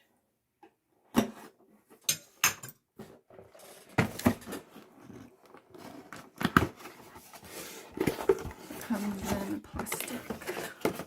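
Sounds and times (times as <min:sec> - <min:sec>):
packaging rustling: 0:03.4 - 0:11.0.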